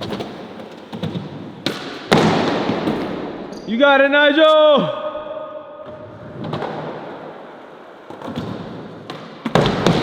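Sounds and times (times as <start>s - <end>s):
skateboard wheels rolling on wood: 6.0s - 10.0s
skateboard clacks: 8.1s - 10.0s.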